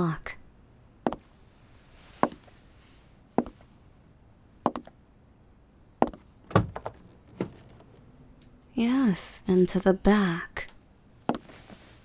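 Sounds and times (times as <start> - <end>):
hard-soled footsteps on hard floor: 1.1 - 1.3, 2.2 - 2.5, 4.7 - 4.9, 6.0 - 8.1
knocks and clicks: 6.0 - 8.1.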